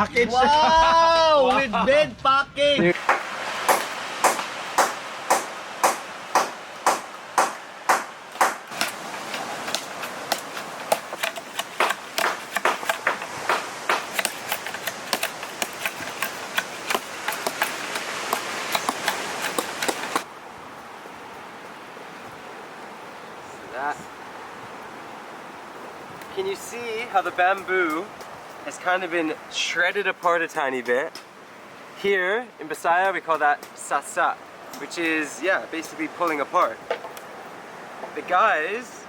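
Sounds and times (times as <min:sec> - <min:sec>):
wind or surf hiss: 0:02.6 - 0:39.0
machetes chopping bamboo: 0:03.1 - 0:20.3.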